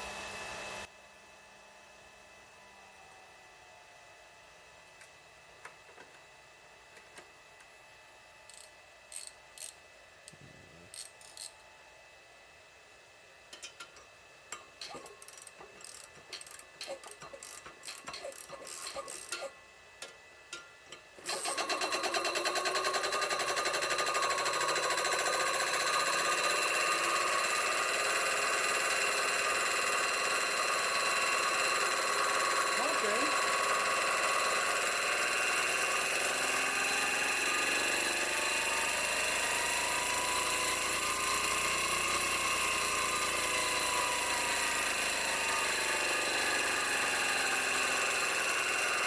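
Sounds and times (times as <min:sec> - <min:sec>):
air compressor running: 0:13.5 - 0:49.0.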